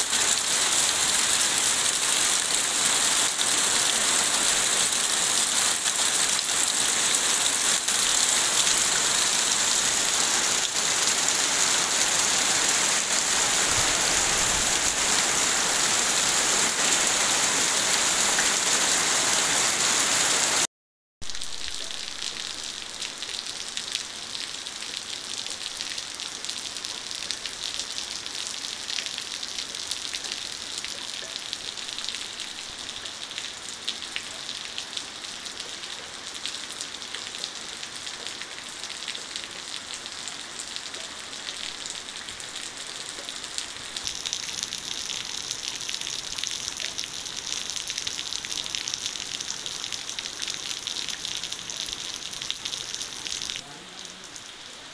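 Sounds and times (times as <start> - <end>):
heavy rain falling: 0.0 - 54.9
raindrops pattering: 21.2 - 54.8.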